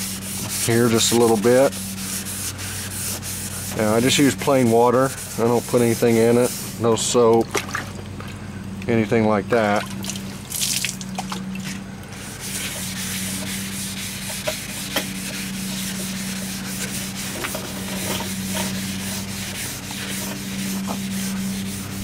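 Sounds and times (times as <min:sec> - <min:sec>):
wet sandpaper rubbing on panel: 0:00.0 - 0:07.3, 0:12.1 - 0:22.0
low hum: 0:00.0 - 0:22.0.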